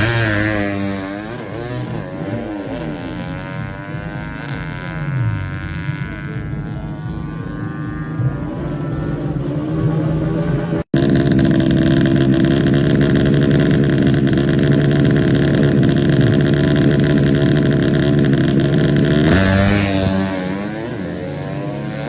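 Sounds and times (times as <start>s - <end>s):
motorcycle engine revving high: 0.0s - 22.0s.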